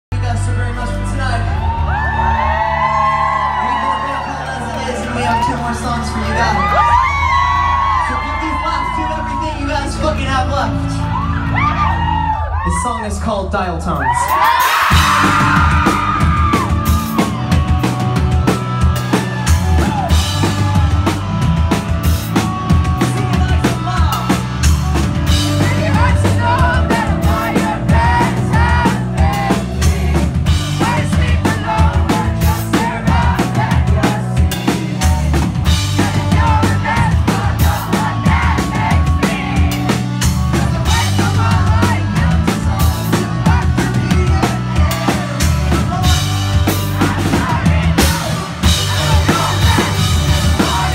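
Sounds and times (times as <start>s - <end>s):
bass notes: 0.0s - 50.9s
rock band playing: 0.1s - 50.9s
electric guitars: 14.4s - 50.9s
drum kit kick and snare: 14.6s - 50.9s.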